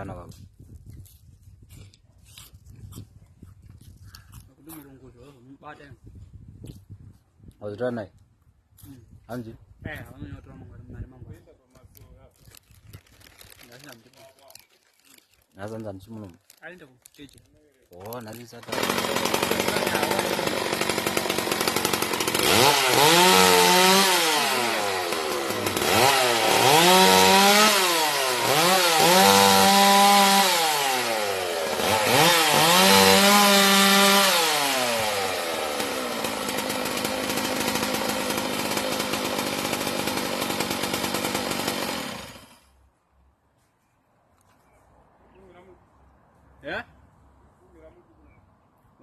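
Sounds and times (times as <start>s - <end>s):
chainsaw revving: 18.0s - 42.7s.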